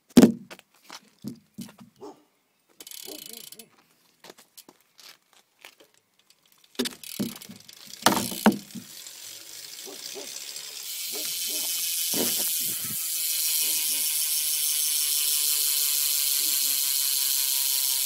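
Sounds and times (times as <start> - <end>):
bike hub ratcheting: 2.8 - 3.6, 6.2 - 18.0
sharp knocks: 6.8 - 8.8.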